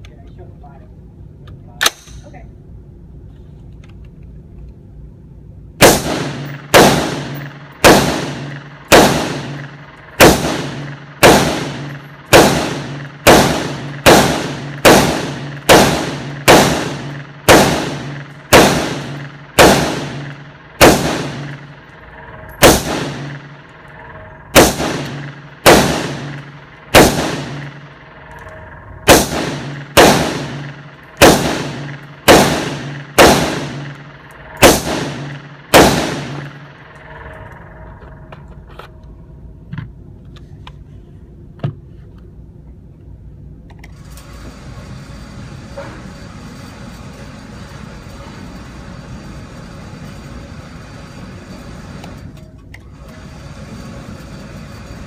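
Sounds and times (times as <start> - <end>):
gunshots: 5.8 - 37.8.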